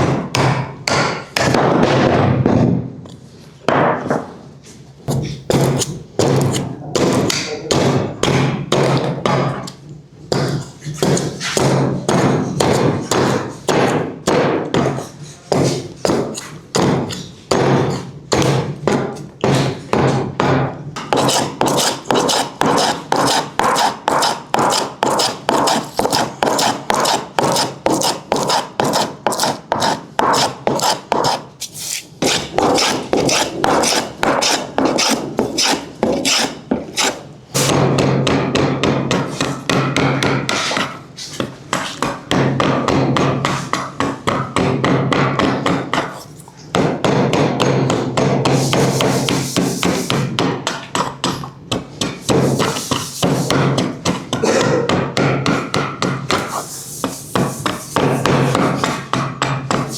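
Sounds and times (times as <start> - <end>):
hand tool strokes on wood: 21.2 - 37.2, 48.5 - 50.2, 52.2 - 53.6, 56.3 - 59.0.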